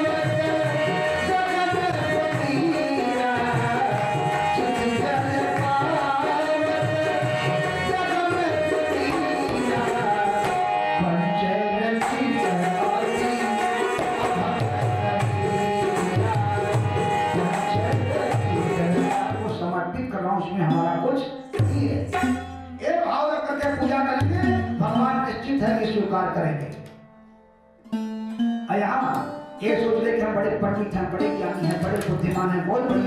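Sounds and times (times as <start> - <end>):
tabla drumming: 0.0 - 11.2, 11.9 - 19.7, 21.5 - 27.0, 31.1 - 33.0
person singing: 0.0 - 19.8, 29.0 - 33.0.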